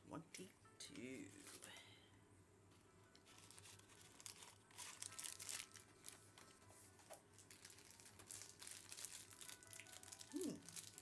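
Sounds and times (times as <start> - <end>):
cardboard crinkling and tearing: 3.2 - 6.5, 7.4 - 11.0.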